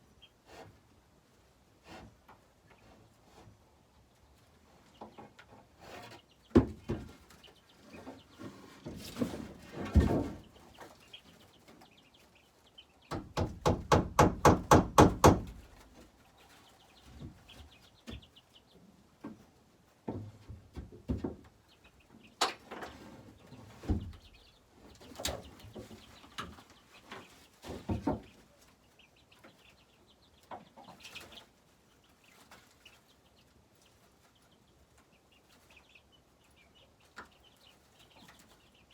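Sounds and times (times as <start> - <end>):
chickens clucking: 0.0 - 13.2, 15.6 - 38.9
hammer striking nail into wood: 13.1 - 15.6
wood knocks and thumps: 13.1 - 15.7.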